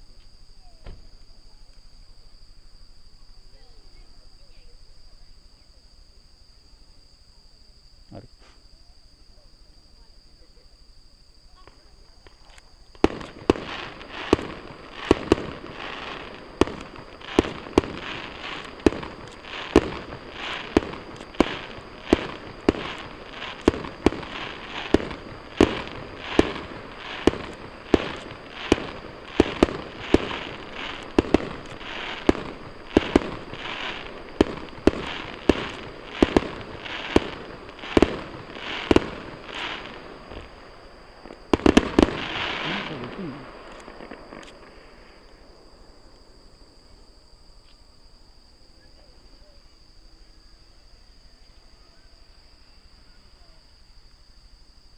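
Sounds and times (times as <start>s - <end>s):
crickets chirring: 0.0s - 54.9s
fireworks bursting: 11.5s - 50.2s.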